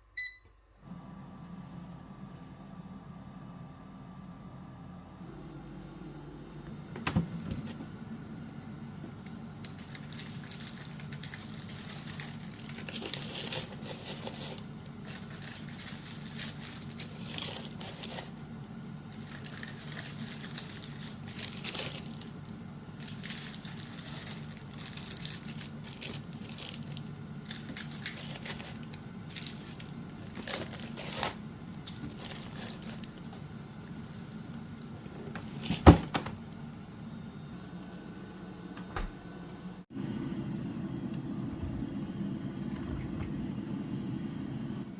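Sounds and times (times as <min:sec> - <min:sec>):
steady low hum: 0:00.0 - 0:44.9
crinkling and rustling handling: 0:09.6 - 0:36.6.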